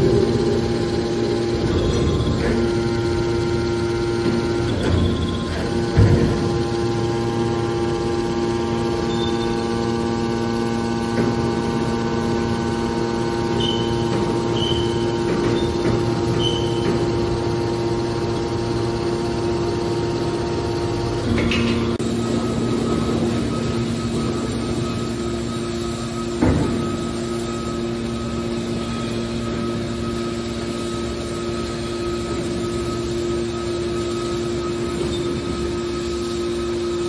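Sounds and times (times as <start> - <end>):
machine knock: 0.0 - 7.0, 13.5 - 17.5
baler motor and pump humming: 0.0 - 37.0.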